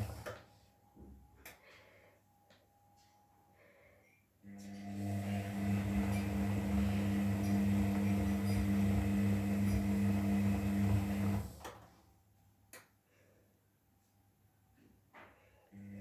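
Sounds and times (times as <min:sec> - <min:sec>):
washing machine humming: 0:00.0 - 0:00.4, 0:04.5 - 0:11.8.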